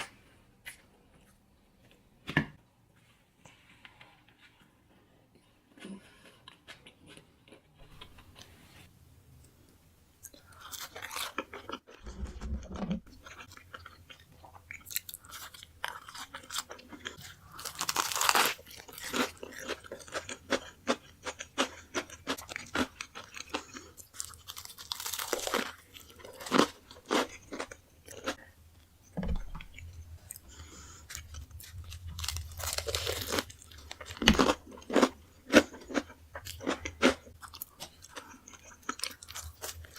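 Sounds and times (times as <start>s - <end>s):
crunchy bites and chewing: 10.2s - 28.5s, 29.3s - 39.9s.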